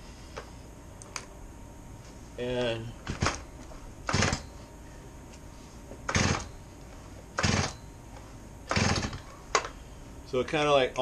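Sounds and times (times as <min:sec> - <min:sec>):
chainsaw recoil starter pulls: 0:08.7 - 0:09.2.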